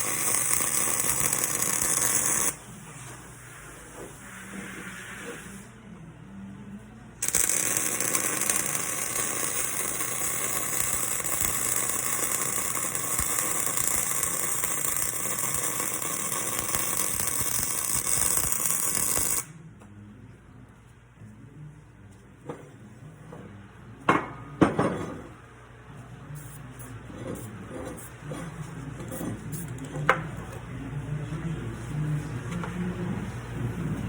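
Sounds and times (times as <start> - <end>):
arc welding crackling sizzle: 0.0 - 2.7, 7.2 - 19.5.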